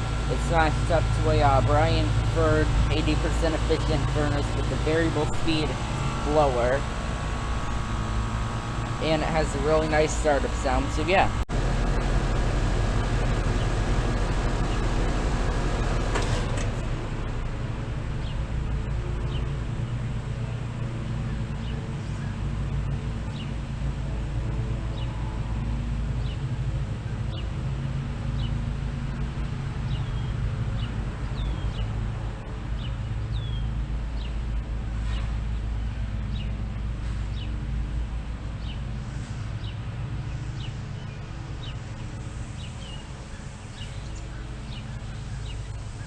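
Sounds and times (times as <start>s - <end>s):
low rumble: 0.0s - 34.8s
air conditioner compressor humming: 0.0s - 35.0s.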